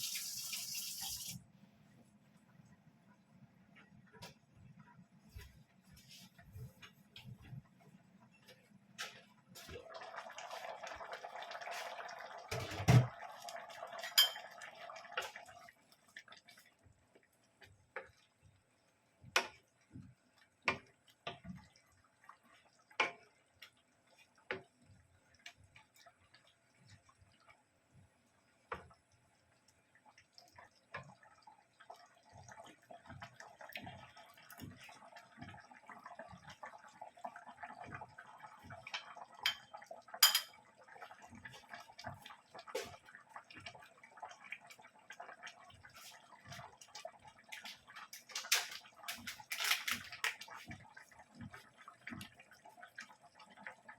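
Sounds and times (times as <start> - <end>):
tap water running: 0.0 - 1.4
dishes and utensils clinking: 14.0 - 14.6, 39.4 - 40.6.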